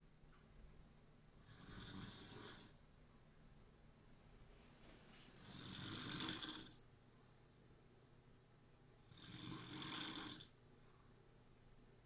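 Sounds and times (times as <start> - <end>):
person snoring: 1.4 - 2.8, 5.3 - 6.8, 9.0 - 10.6.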